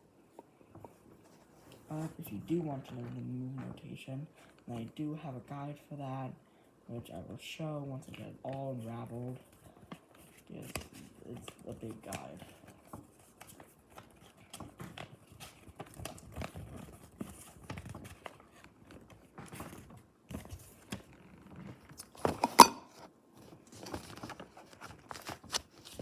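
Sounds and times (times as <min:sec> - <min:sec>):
paper rustling and crinkling: 0:09.3 - 0:22.3, 0:23.4 - 0:26.0.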